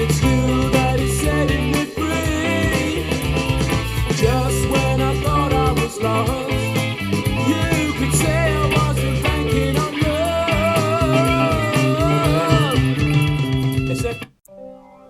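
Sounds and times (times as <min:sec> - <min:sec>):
rock music with singing: 0:00.0 - 0:14.3.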